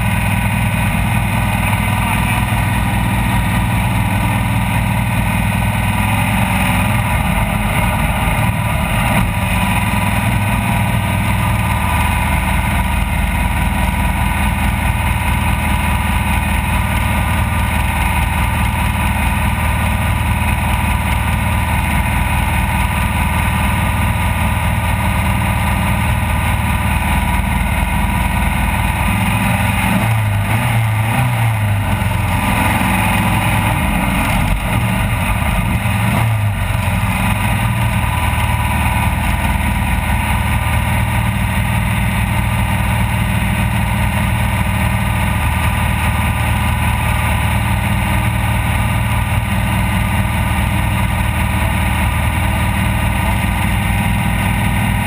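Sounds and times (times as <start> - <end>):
race vehicle engine running: 0.0 - 55.0.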